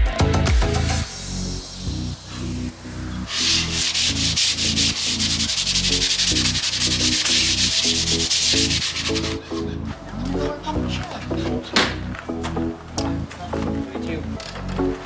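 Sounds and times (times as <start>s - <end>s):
background music with beat: 0.0s - 10.1s
wood being hand-sanded: 1.6s - 9.4s.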